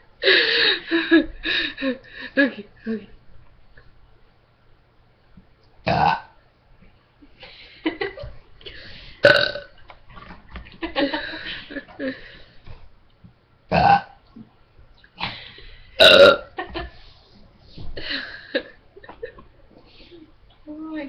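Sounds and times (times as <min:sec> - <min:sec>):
loud human burps: 0:05.8 - 0:06.4, 0:09.2 - 0:09.7, 0:13.7 - 0:14.2, 0:16.0 - 0:16.5.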